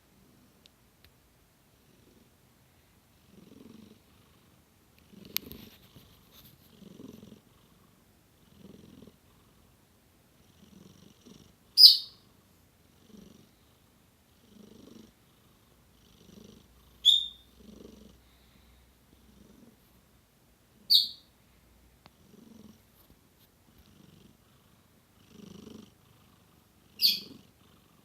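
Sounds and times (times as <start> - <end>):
cat purr-snoring: 1.8 - 2.3, 3.1 - 9.7, 10.4 - 19.9, 22.1 - 23.0, 23.7 - 28.0.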